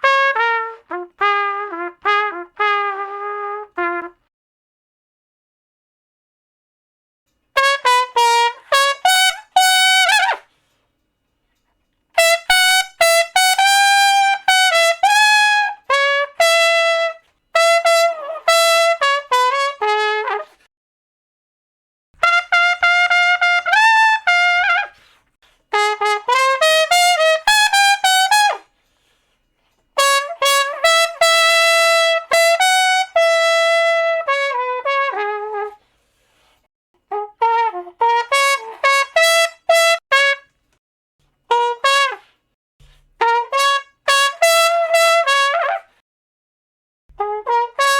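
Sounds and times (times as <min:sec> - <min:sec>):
solo trumpet playing: 0:00.0 - 0:04.2, 0:07.6 - 0:10.5, 0:12.2 - 0:20.6, 0:22.2 - 0:28.7, 0:30.0 - 0:35.8, 0:37.1 - 0:40.5, 0:41.5 - 0:42.3, 0:43.2 - 0:45.9, 0:47.1 - 0:47.9.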